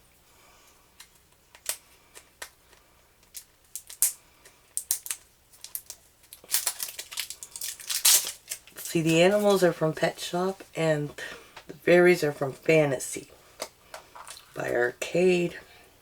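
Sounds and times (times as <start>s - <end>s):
packaging clicks and crinkles: 1.0s - 9.7s.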